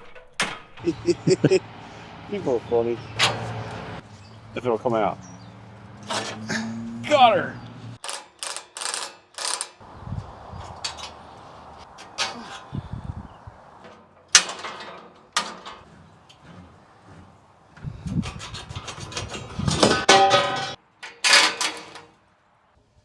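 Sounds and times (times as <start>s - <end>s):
metal clanks: 0.0s - 8.0s, 10.6s - 12.8s, 13.7s - 22.1s
metal rubbing and clatter: 3.0s - 6.6s, 13.8s - 20.8s.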